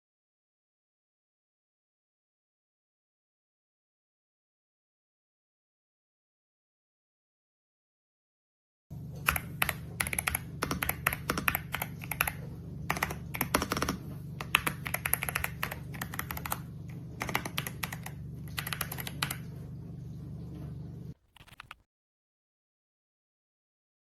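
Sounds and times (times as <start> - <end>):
low hum: 8.9 - 21.8
mechanical keyboard typing: 9.2 - 19.5, 21.2 - 21.8.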